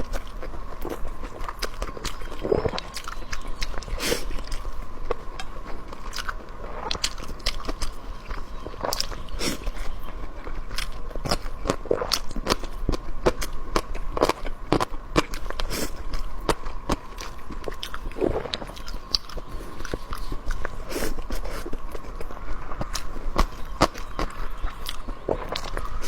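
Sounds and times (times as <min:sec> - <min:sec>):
person chewing food: 0:00.0 - 0:26.0.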